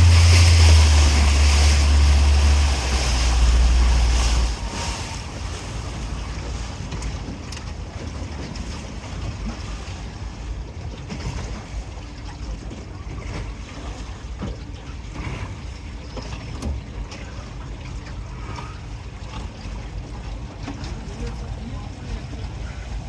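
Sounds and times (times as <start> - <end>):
wind buffeting microphone: 0.0 - 8.4
steady low rumble: 0.0 - 11.0, 16.8 - 23.0
water rushing past hull: 0.0 - 23.0.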